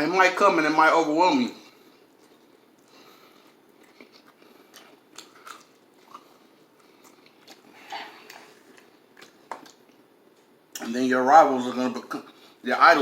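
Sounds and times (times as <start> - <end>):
chewing crispy fried chicken: 1.8 - 10.1.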